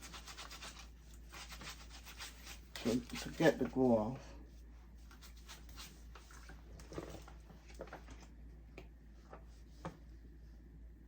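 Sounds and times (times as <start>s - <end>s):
rubbing and soft scrapes: 0.0s - 8.3s.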